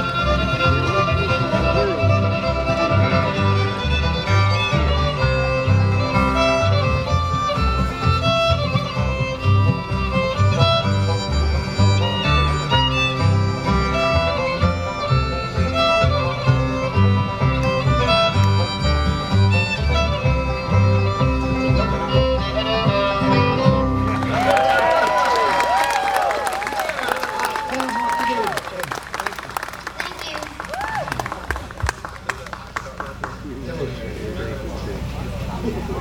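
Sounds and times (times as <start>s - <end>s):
rhythm guitar strumming: 0.0s - 24.3s
alternating bass notes: 0.0s - 24.7s
fiddle playing lead: 0.0s - 29.4s.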